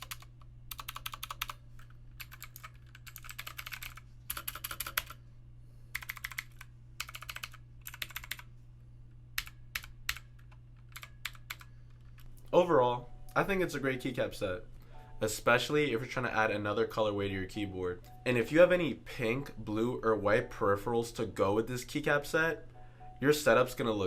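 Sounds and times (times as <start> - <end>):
mechanical keyboard typing: 0.0 - 5.2, 6.0 - 8.5, 9.4 - 12.3.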